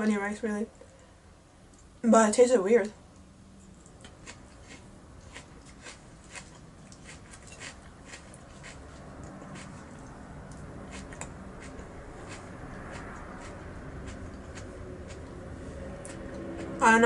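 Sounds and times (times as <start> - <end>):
chewing with wet mouth clicks: 3.2 - 15.4.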